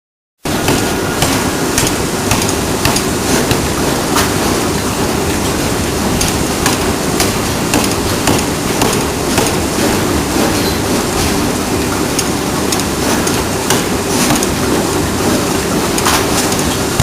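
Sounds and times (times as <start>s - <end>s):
sharp metallic clanks: 0.5s - 4.5s
loud mechanical drone: 0.5s - 17.0s.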